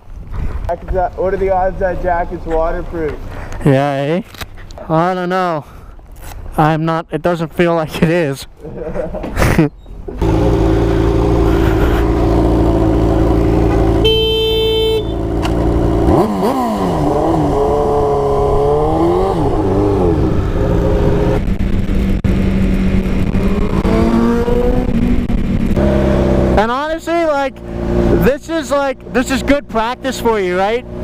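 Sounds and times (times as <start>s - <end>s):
motorcycle engine revving: 10.1s - 31.0s
horn blast: 13.6s - 15.4s.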